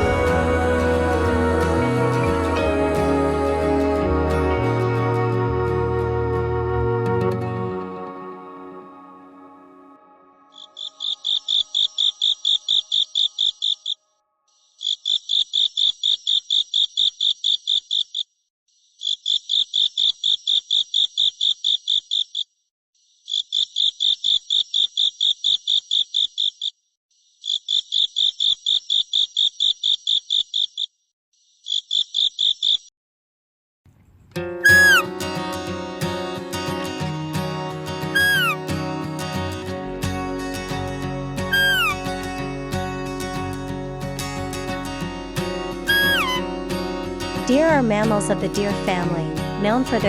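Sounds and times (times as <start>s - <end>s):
grasshopper chirping: 10.5s - 14.0s, 34.7s - 35.1s, 38.0s - 38.6s, 41.4s - 42.4s, 45.8s - 46.9s.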